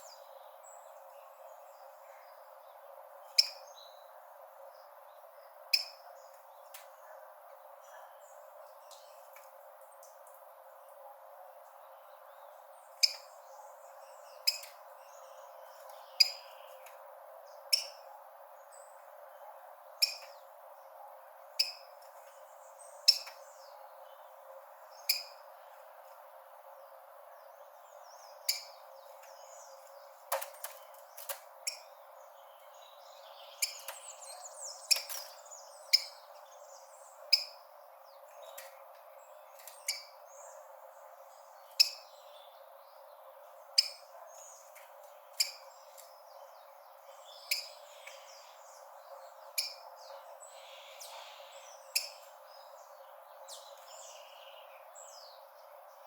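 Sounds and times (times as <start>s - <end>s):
sparrow call notes: 12.9s - 16.9s, 49.2s - 52.4s.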